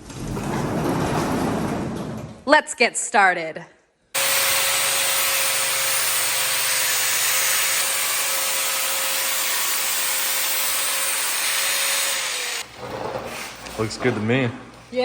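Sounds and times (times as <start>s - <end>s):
power tool grinding: 4.2s - 13.8s.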